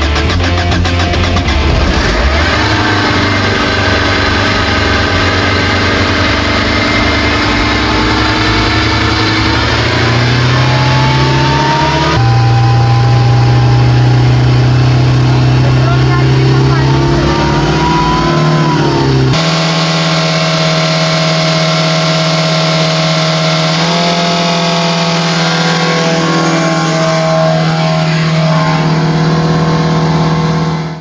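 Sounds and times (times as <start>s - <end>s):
diesel engine running and revving: 0.0s - 31.0s.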